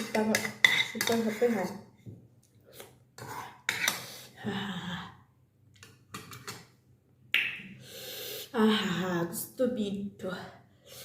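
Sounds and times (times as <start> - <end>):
utensils clinking on a bowl: 0.0 - 1.7.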